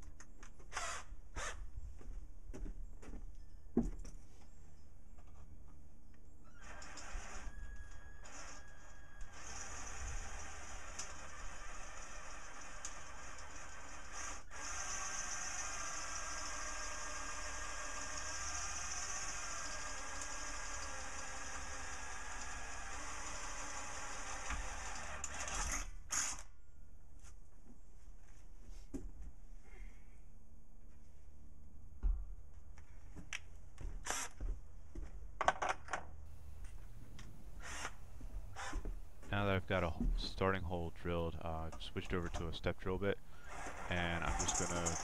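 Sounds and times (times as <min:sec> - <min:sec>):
electric drill boring through steel: 0:06.6 - 0:26.4, 0:37.6 - 0:38.0, 0:43.4 - 0:45.0
tool scraping: 0:43.4 - 0:45.0
metal tools clicking: 0:44.3 - 0:45.0.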